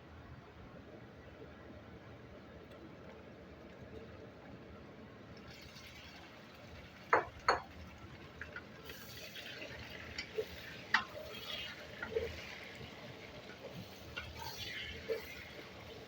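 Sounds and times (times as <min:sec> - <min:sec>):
light sizzle: 0:02.1 - 0:16.0.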